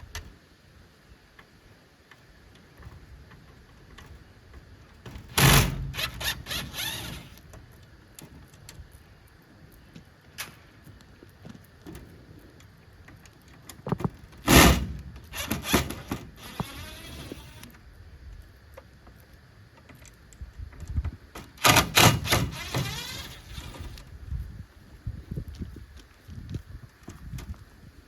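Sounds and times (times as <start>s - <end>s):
hard knocks and clatter on door: 5.1s - 6.2s.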